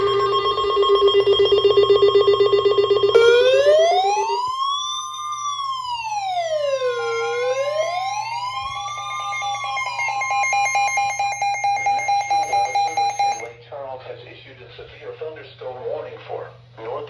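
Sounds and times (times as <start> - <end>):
rapidly pulsing alarm tone: 0.0 - 13.6
siren wailing up and down: 0.0 - 13.6
steady held tone: 0.0 - 13.6.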